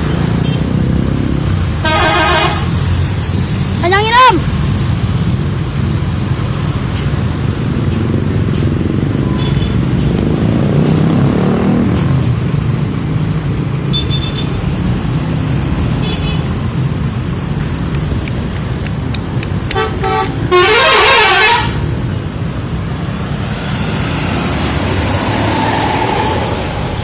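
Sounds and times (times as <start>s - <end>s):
heavy road traffic: 0.0s - 27.0s
vehicle passing close: 9.8s - 13.9s, 21.7s - 27.0s.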